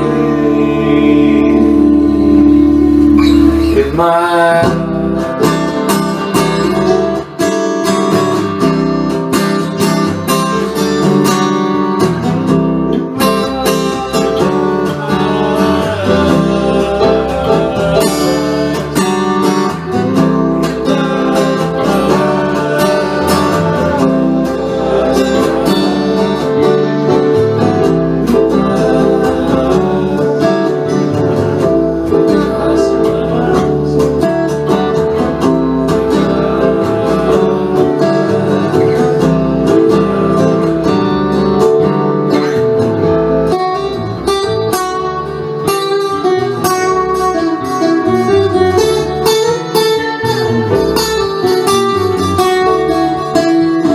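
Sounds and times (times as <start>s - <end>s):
acoustic guitar picking and strumming: 0.0s - 53.9s.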